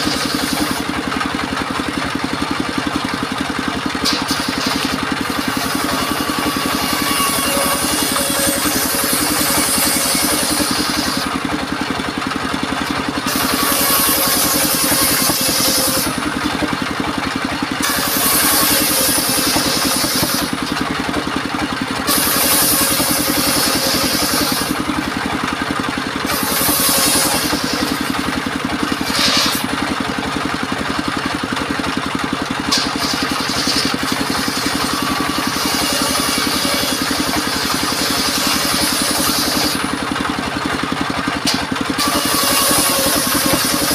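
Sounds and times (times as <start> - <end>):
sawmill engine running: 0.0 - 43.9
saw blade hissing through timber: 17.8 - 20.6, 22.1 - 24.8, 26.2 - 28.2, 28.8 - 29.8, 32.7 - 40.0, 41.5 - 43.9.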